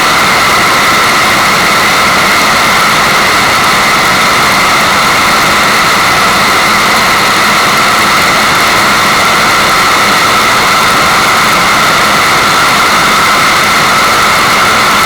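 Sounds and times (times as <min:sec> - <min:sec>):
rushing water white noise: 0:00.0 - 0:15.0.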